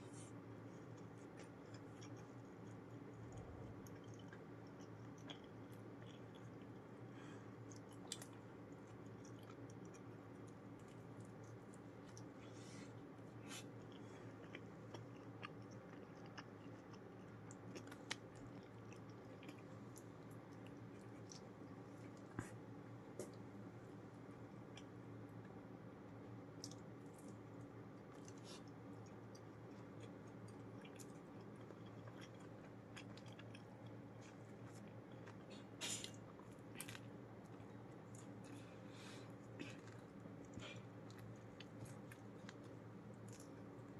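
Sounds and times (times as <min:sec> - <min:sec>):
low electrical hum: 0:00.0 - 0:43.9
chewing and biting: 0:00.6 - 0:06.9, 0:07.6 - 0:12.4, 0:13.4 - 0:22.4, 0:26.6 - 0:35.5, 0:39.4 - 0:43.9.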